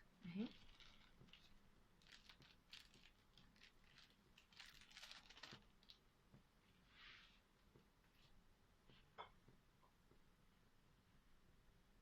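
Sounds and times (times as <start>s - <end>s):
soft hiss: 5.2s - 12.0s.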